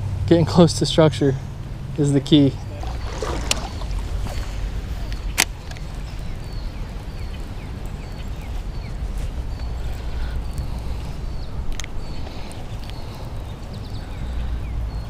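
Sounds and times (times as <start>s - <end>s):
wind: 0.0s - 15.0s
moving water: 1.5s - 8.6s.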